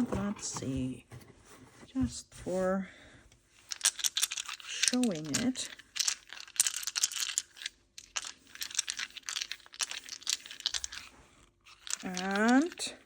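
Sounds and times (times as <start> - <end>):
wooden charms rattling in hands: 3.6 - 13.0.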